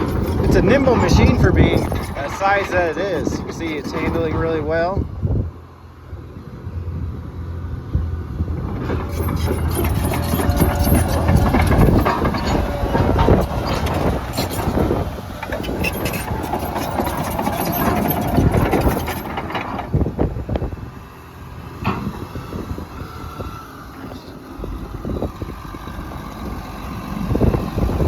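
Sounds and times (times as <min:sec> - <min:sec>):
tracks and blade clanking: 0:00.0 - 0:04.9, 0:08.5 - 0:20.7
dozer diesel engine running hard: 0:00.0 - 0:28.0.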